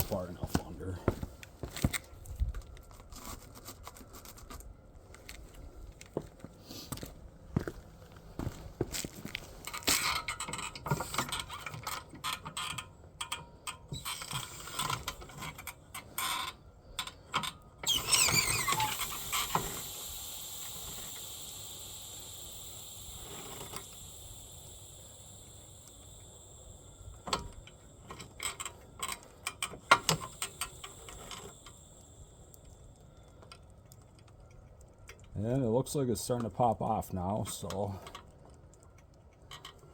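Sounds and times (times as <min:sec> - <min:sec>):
steady high-pitched tone: 0:18.3 - 0:28.4.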